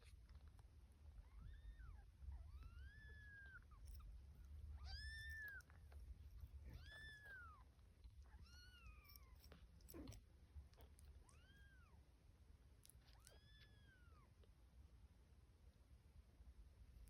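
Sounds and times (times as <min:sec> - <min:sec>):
kitten meowing: 0:04.8 - 0:05.8, 0:06.6 - 0:09.4, 0:13.0 - 0:14.3.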